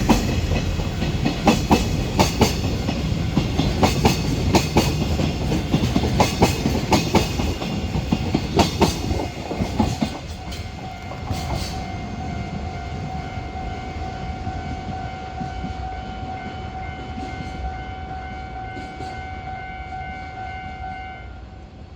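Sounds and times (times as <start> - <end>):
train wheels clacking over rail joints: 0.0 - 13.9.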